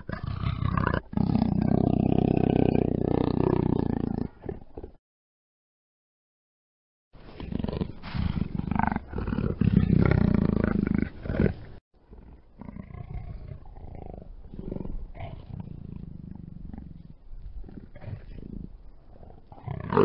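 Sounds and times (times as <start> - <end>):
big cat roaring: 0.0 - 4.8, 17.6 - 20.0
big cat growling: 0.0 - 5.0, 7.4 - 20.0.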